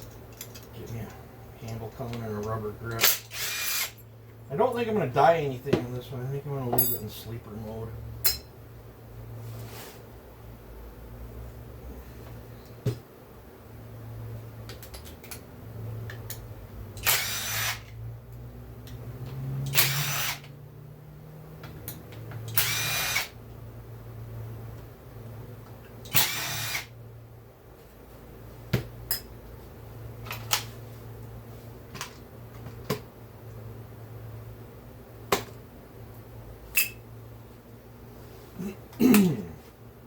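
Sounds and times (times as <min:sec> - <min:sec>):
clicks of tools being handled: 0:00.0 - 0:01.0
cordless power driver spinning: 0:03.1 - 0:04.0, 0:17.0 - 0:18.0, 0:22.5 - 0:23.4, 0:26.1 - 0:26.9.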